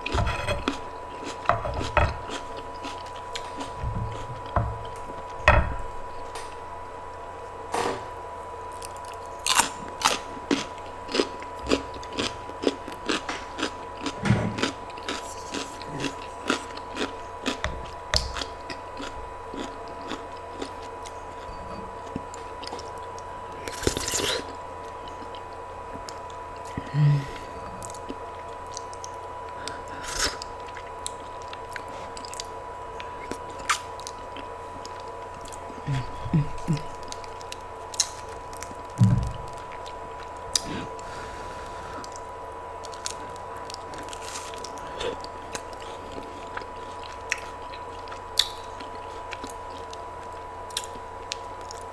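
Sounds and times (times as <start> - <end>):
person crunching and chewing food: 0.0 - 6.7, 8.7 - 51.9.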